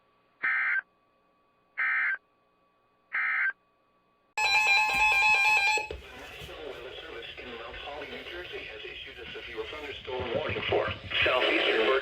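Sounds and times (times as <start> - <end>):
two-tone attention signal: 4.4 - 6.0.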